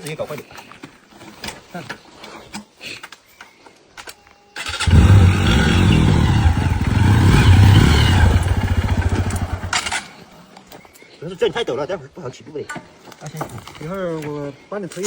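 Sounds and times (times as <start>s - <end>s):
motorcycle engine running: 4.7s - 10.3s.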